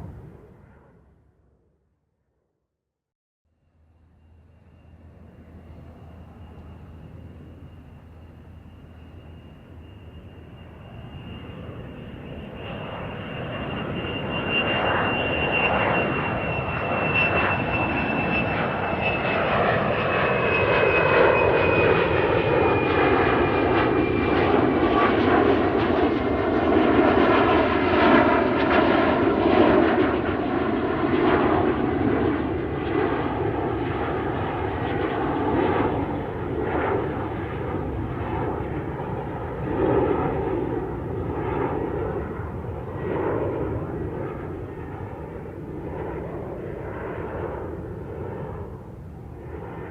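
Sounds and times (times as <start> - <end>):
airplane engines roaring: 0.0 - 1.6, 3.5 - 49.9
high engine whine: 3.5 - 28.8.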